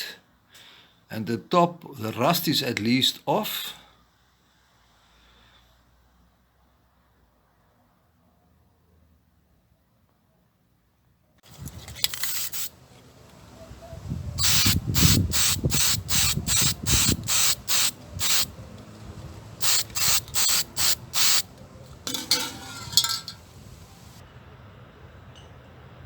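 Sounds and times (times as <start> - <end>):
spray paint can bursts: 11.6 - 12.7, 14.4 - 18.5, 19.6 - 24.2.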